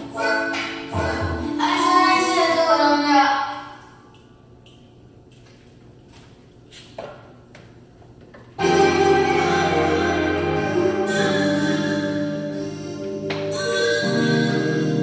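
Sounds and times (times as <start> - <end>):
song with keyboard chords: 8.6 - 15.0.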